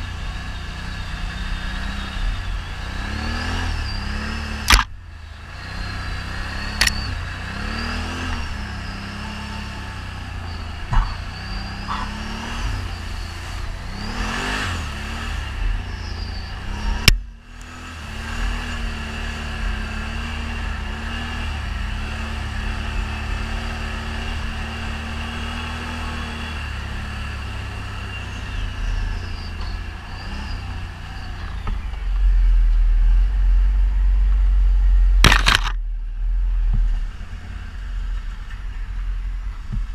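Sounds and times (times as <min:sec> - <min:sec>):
atv engine revving: 0:00.0 - 0:39.9
sharp click: 0:04.6 - 0:05.0, 0:06.8 - 0:07.1, 0:35.2 - 0:35.8.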